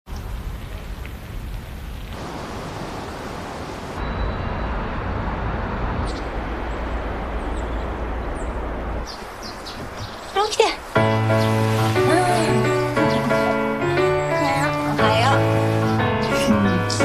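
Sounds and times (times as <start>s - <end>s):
outdoor low rumble: 4.0s - 9.2s.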